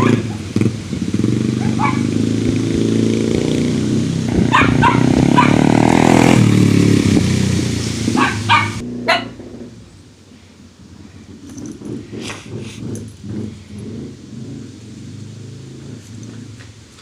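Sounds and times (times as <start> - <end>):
dirt bike engine running: 0.0 - 10.0, 11.3 - 17.0
dog barking: 1.6 - 2.2, 4.4 - 5.7, 8.2 - 9.4.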